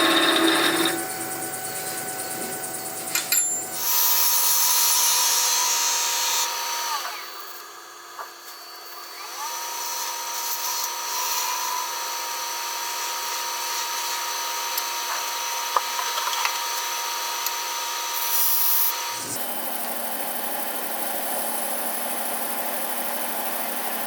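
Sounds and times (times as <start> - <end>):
gouge working spinning wood: 0.0 - 3.8
wood lathe motor whine: 0.0 - 8.1, 8.7 - 18.2, 18.8 - 24.0.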